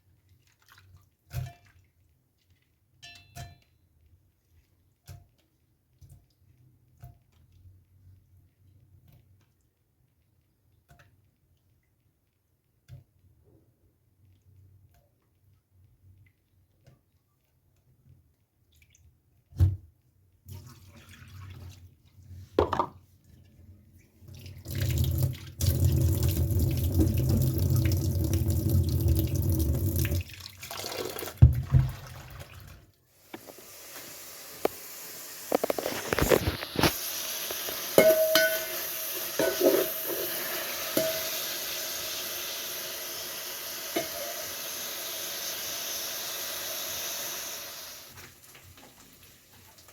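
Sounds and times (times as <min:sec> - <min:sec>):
water running at a sink: 0:24.2 - 0:49.9
steady hiss: 0:33.2 - 0:48.1
dishes clinking: 0:37.7 - 0:41.6, 0:43.9 - 0:44.4.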